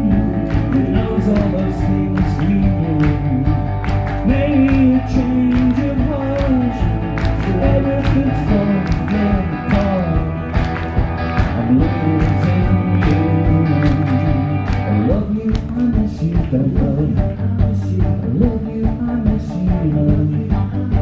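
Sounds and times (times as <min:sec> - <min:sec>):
pop-rock band playing: 0:00.0 - 0:21.0
steady drum beat: 0:00.0 - 0:21.0.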